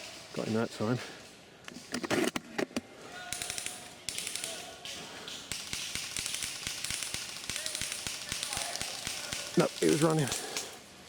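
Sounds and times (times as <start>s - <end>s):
airsoft guns firing: 3.3s - 10.8s.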